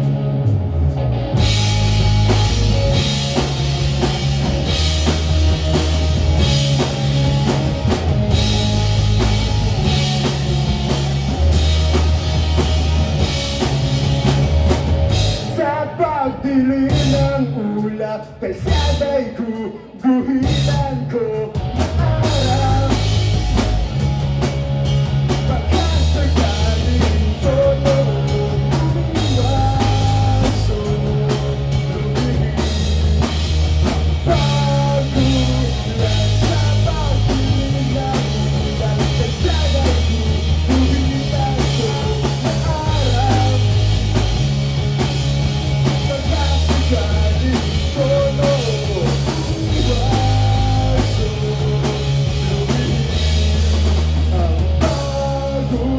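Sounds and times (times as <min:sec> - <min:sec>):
guitar melody: 0:00.0 - 0:15.5
drum kit beat: 0:00.0 - 0:17.6, 0:20.4 - 0:55.9
bass line: 0:00.0 - 0:19.4, 0:20.3 - 0:55.9.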